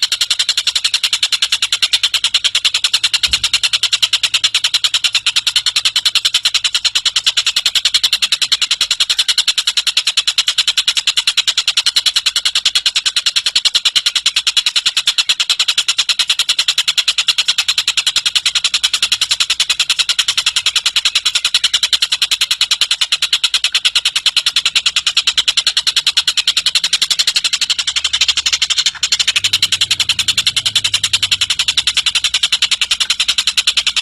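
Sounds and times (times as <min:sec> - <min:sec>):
bird ticking trill: 0:00.0 - 0:34.0.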